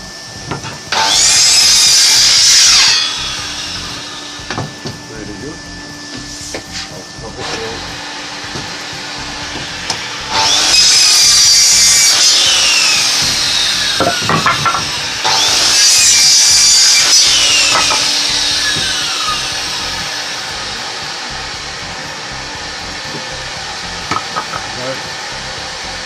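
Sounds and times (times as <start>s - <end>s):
circular saw cutting wood: 0.0s - 26.0s
knocks: 24.1s - 24.8s.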